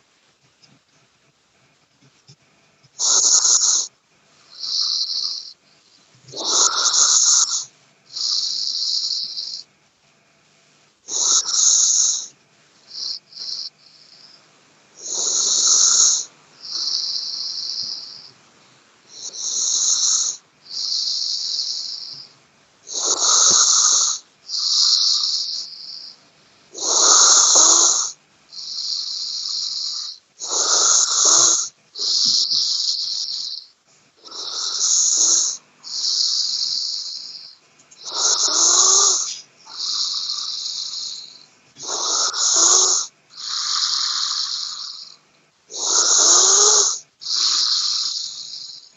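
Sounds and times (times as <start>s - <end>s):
person snoring: 3.0s - 3.9s, 4.5s - 5.6s, 6.3s - 9.6s, 11.1s - 12.3s, 12.9s - 13.7s, 15.0s - 18.2s, 19.1s - 22.1s, 22.9s - 26.1s, 26.8s - 33.6s, 34.2s - 48.9s
hissing breath: 3.0s - 5.6s, 6.3s - 9.6s, 11.1s - 12.3s, 15.0s - 18.3s, 22.9s - 26.2s, 26.8s - 48.9s.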